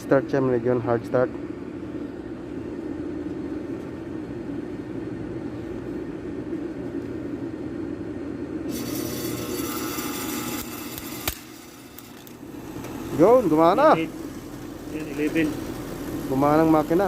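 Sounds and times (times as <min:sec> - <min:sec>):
compressor low hum: 0:00.0 - 0:17.0
hissing buzz with high tones: 0:08.7 - 0:17.0.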